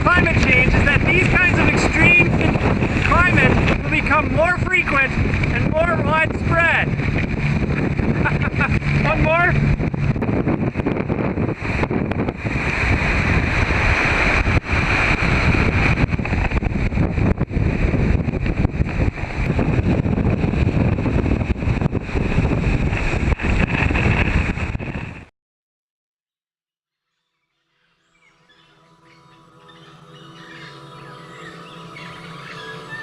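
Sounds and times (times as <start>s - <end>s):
hurricane winds buffeting microphone: 0.0s - 25.3s.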